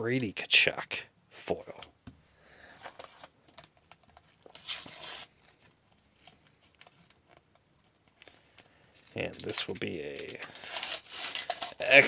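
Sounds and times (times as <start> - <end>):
soft crinkling of a pack: 2.6 - 12.0
wrapper tearing open: 4.4 - 5.3, 9.0 - 12.0.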